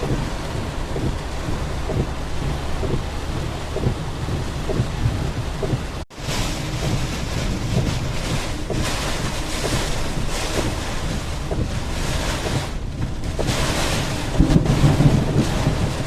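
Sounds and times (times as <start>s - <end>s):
rushing water: 0.0s - 16.0s
wind buffeting microphone: 0.0s - 16.0s.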